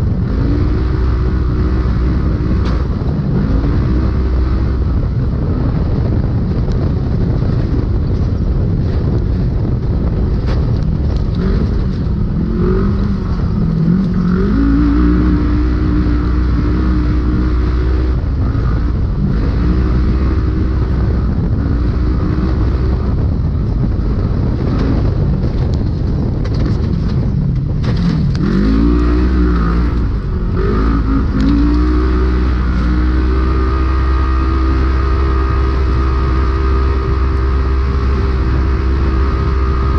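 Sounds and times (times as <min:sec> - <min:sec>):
drivetrain and chassis rumble: 0:00.0 - 0:39.9
engine revving: 0:00.0 - 0:39.9
sharp knocks on rough ground: 0:02.5 - 0:03.2, 0:24.6 - 0:30.0.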